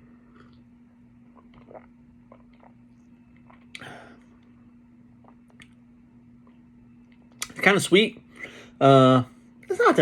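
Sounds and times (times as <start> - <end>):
steady low hum: 0.0 - 10.0
man sipping: 1.2 - 4.6.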